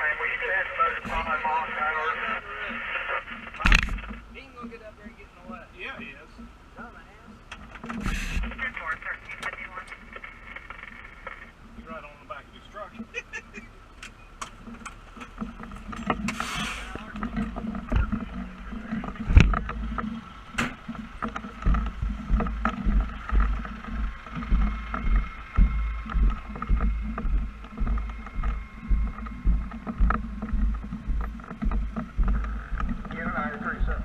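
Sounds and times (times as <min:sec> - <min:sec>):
truck engine and road rumble: 0:00.0 - 0:34.0
heavy low thumps: 0:15.5 - 0:34.0.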